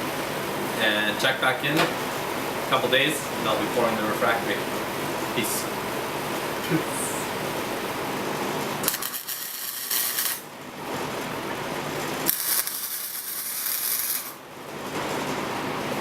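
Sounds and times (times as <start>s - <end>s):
harsh hissing metalwork noise: 8.8s - 10.5s, 12.2s - 14.4s.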